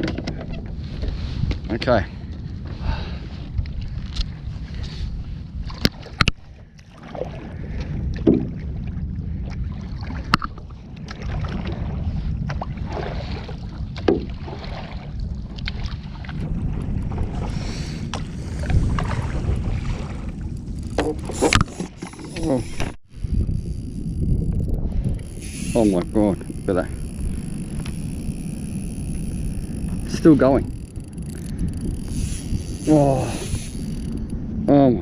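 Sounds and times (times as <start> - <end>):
wind rumble on microphone: 0.0 - 35.0
paddle strokes in water: 4.8 - 23.0.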